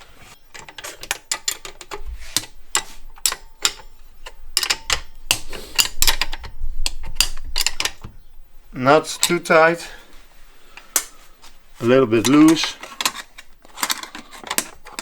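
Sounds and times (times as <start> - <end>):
hand tools clicking on metal: 0.5 - 8.1, 9.0 - 9.6, 12.1 - 15.0.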